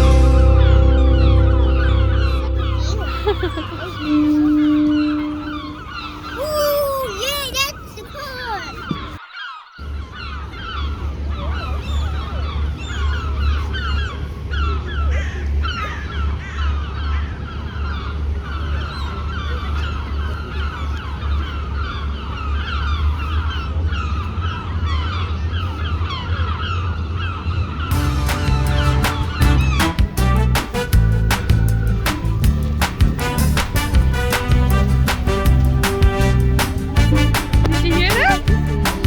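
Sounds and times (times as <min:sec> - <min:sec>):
low rumble: 0:00.0 - 0:06.0, 0:27.9 - 0:39.0
flock of birds calling: 0:00.0 - 0:39.0.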